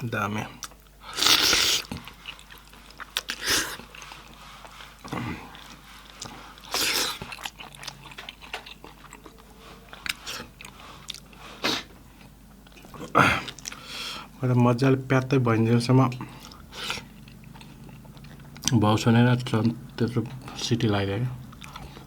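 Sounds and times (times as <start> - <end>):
wet chewing: 0.6 - 13.9, 16.2 - 18.8, 21.5 - 22.0.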